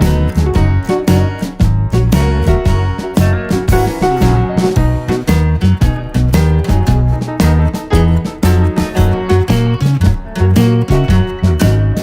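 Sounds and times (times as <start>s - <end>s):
instrumental music with beat: 0.0s - 12.0s.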